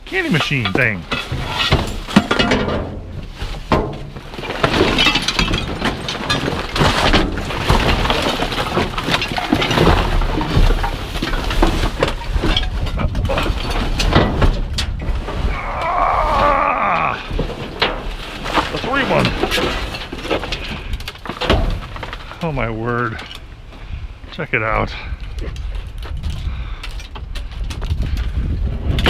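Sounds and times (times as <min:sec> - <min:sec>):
trash clattering and clinking: 0:00.0 - 0:23.5.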